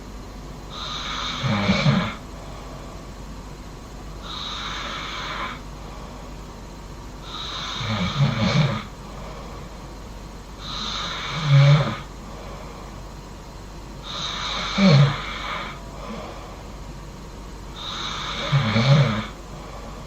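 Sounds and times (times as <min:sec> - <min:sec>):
person snoring: 0:00.7 - 0:02.2, 0:04.2 - 0:06.2, 0:07.2 - 0:09.7, 0:10.6 - 0:13.0, 0:14.0 - 0:16.8, 0:17.8 - 0:20.0.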